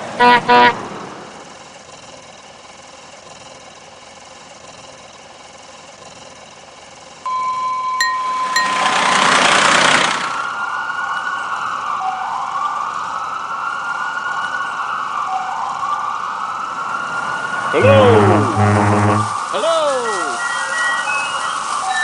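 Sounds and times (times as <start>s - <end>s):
steady electronic tone: 17.8s - 19.4s
toy horn beeps: 17.8s - 19.4s.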